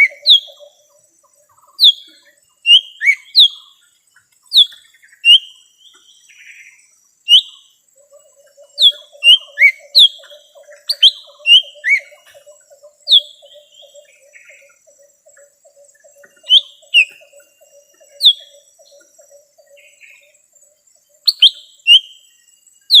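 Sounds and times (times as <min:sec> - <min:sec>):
bird whistled notes: 0:00.0 - 0:00.7, 0:01.8 - 0:03.7, 0:04.5 - 0:05.6, 0:07.3 - 0:07.6, 0:08.8 - 0:12.3, 0:13.0 - 0:14.8, 0:16.4 - 0:19.0, 0:21.3 - 0:22.2.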